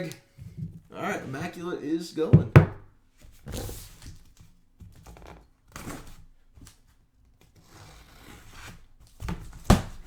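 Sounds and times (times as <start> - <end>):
knock: 2.3 - 2.9.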